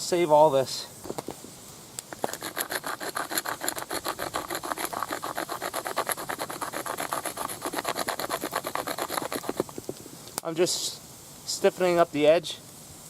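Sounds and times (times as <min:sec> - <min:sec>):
bone scraping on sandstone: 0:02.1 - 0:10.0.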